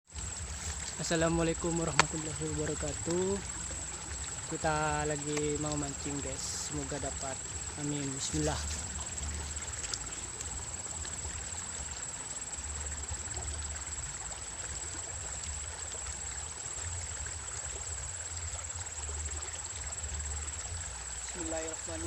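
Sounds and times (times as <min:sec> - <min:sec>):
river water rushing: 0:00.1 - 0:16.3.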